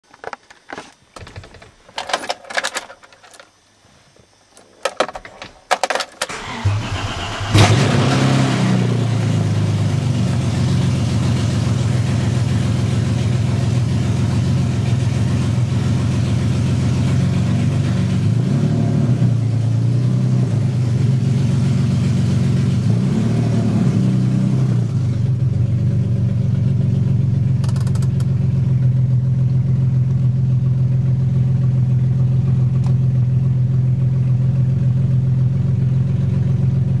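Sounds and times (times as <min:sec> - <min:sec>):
car engine cranking and idling: 0:00.1 - 0:37.0
clicks: 0:01.2 - 0:03.5, 0:04.2 - 0:06.6, 0:27.6 - 0:28.3.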